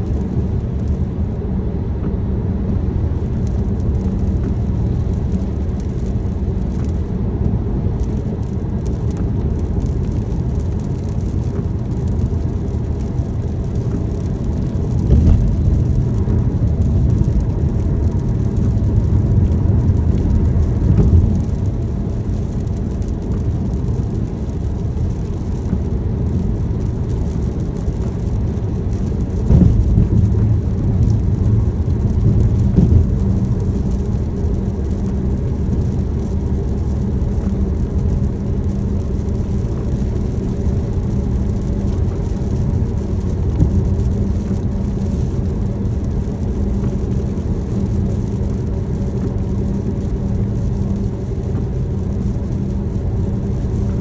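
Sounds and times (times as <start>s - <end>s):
car road and engine noise: 0.0s - 54.0s
low bumps: 0.0s - 54.0s
rain ticking on car: 0.0s - 54.0s.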